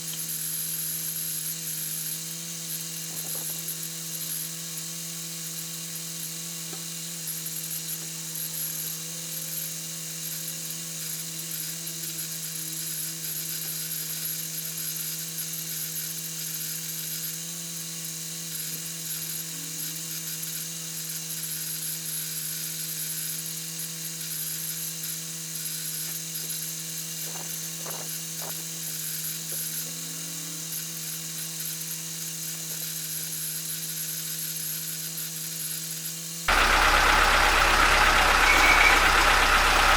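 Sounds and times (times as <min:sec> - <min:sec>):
air compressor motor hum: 0:00.0 - 0:15.2, 0:36.4 - 0:39.9
compressor hiss: 0:36.5 - 0:39.9.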